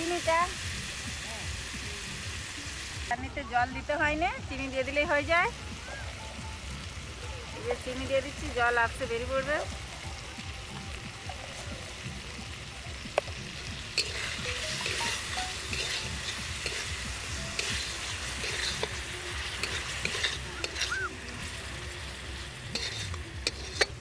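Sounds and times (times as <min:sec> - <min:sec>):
chutney sizzling in a pan: 0:00.0 - 0:24.0
spoon clicking against pan: 0:17.6 - 0:18.9, 0:19.6 - 0:20.9, 0:22.7 - 0:24.0.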